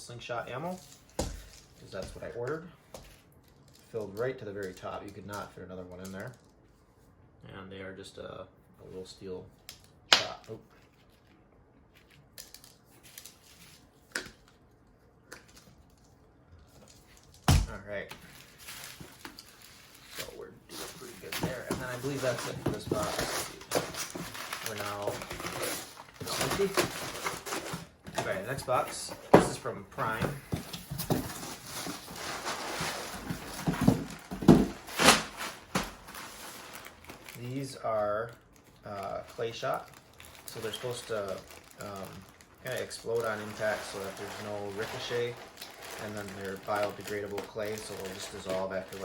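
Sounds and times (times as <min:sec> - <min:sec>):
packaging rustling and crinkling: 0:15.4 - 0:49.0.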